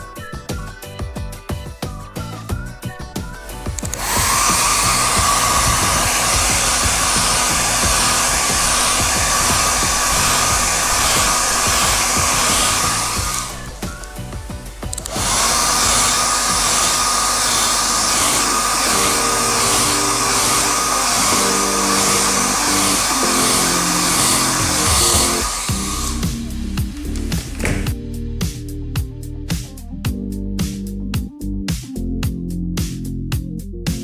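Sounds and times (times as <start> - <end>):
small electric motor whirring: 3.4 - 27.9.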